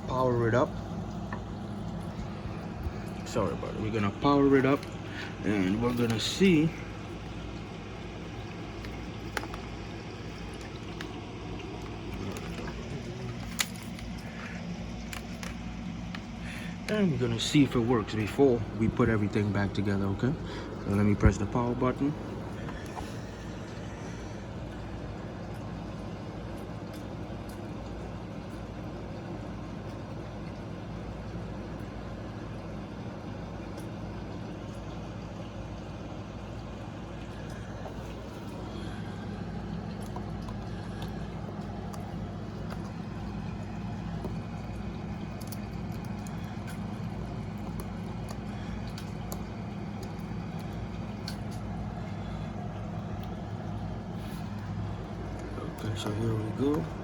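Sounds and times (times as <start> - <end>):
faint hum: 0.0 - 57.0.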